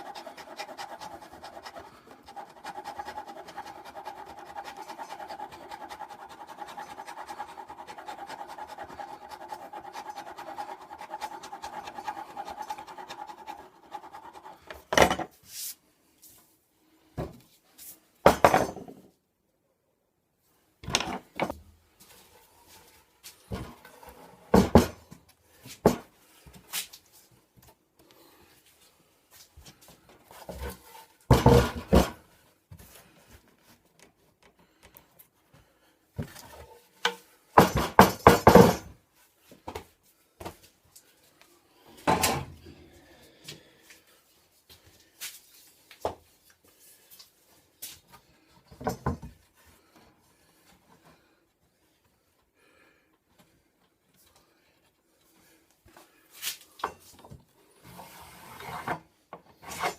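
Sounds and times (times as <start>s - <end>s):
tools and wood knocking: 18.2s - 19.1s, 20.8s - 21.6s, 24.4s - 26.1s, 30.4s - 32.2s, 36.2s - 39.0s, 48.7s - 49.4s.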